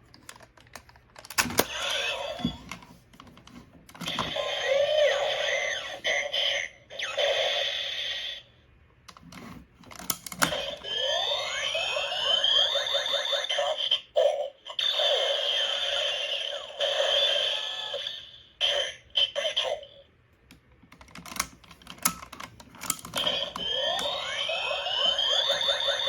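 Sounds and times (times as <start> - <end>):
toy belt electronic sound effects: 1.6 - 2.6, 4.0 - 8.4, 10.5 - 19.9, 22.8 - 26.0
plastic clicks: 20.4 - 24.3.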